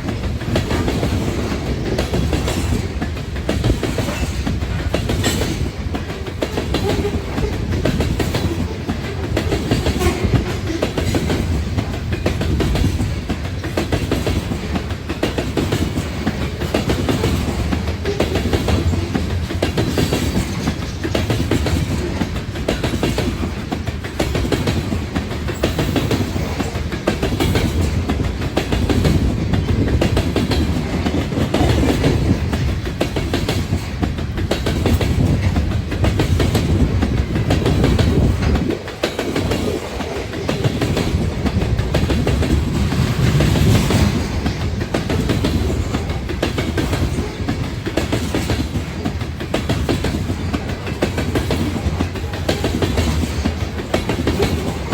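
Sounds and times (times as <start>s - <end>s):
train wheels clattering over rail joints: 0.0s - 54.9s.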